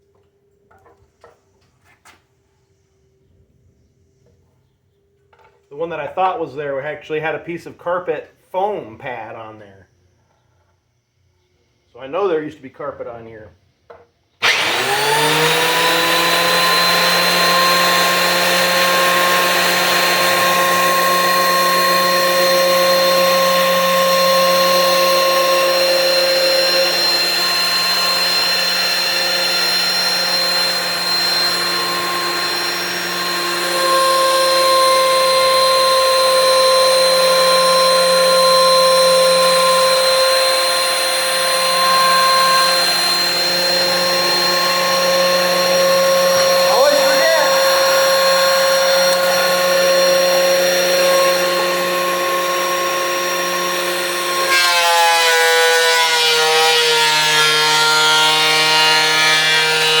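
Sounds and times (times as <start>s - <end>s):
thickness planer motor whine: 14.4s - 60.0s.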